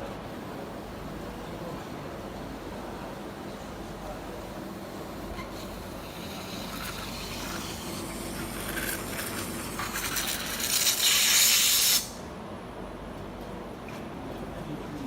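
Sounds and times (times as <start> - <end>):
welding hiss and crackle: 5.1 - 12.2.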